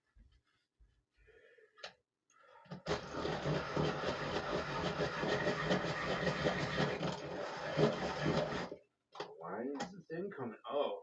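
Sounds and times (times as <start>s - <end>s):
electric pencil sharpener grinding: 2.7s - 8.8s.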